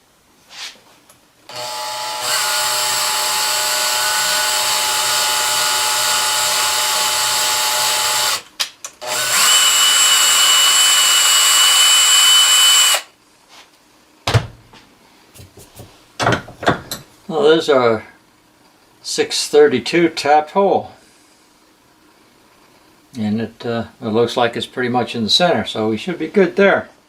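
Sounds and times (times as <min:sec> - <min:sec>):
power drill whining: 0:01.5 - 0:13.1.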